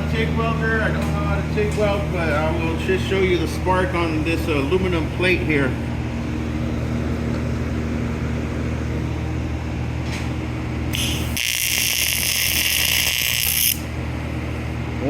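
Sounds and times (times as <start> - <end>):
welder humming: 10.8 - 14.7
welding arc buzzing hiss: 10.9 - 14.0.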